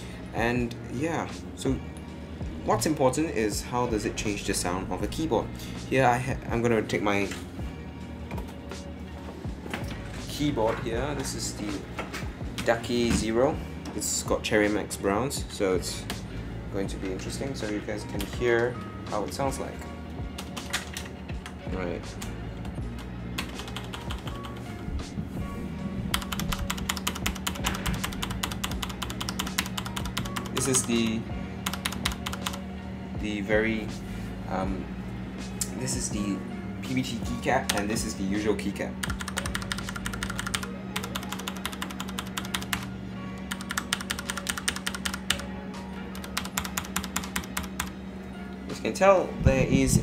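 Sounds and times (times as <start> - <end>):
mechanical keyboard typing: 23.4 - 24.4, 26.1 - 32.6, 39.0 - 42.9, 43.5 - 45.4, 46.1 - 47.9.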